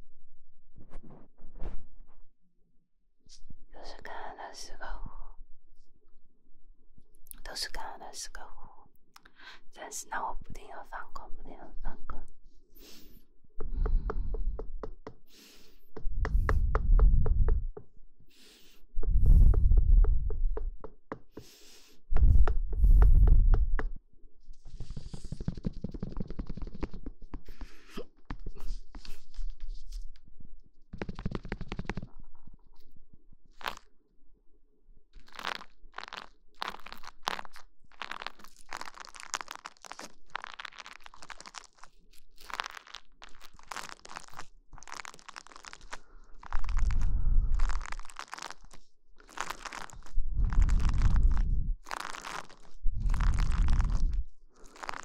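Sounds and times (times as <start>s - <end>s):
rubbing against microphone: 0.8s - 2.3s, 19.0s - 20.8s, 21.4s - 23.8s, 24.5s - 30.2s, 30.9s - 32.8s, 35.3s - 55.0s
deep muffled rumbles: 16.0s - 17.8s, 19.0s - 20.8s, 22.1s - 24.0s, 50.2s - 51.8s
crisp crackles: 33.5s - 33.9s, 35.2s - 55.0s.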